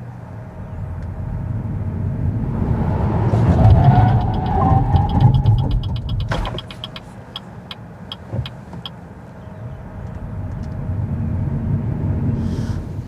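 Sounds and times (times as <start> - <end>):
road and tyre rumble: 0.0 - 13.0
light ticking: 3.3 - 9.0.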